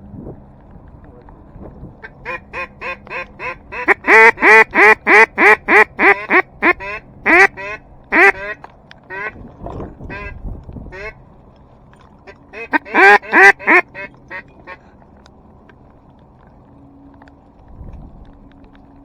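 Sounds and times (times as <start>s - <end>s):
duck call quacks: 2.0s - 9.4s, 10.1s - 11.2s, 12.3s - 14.8s.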